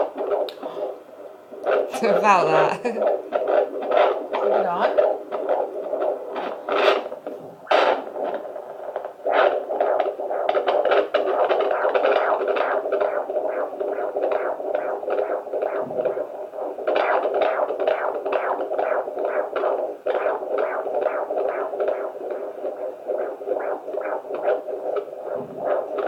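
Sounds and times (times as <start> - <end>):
fetal heartbeat through doppler: 0.0 - 26.0.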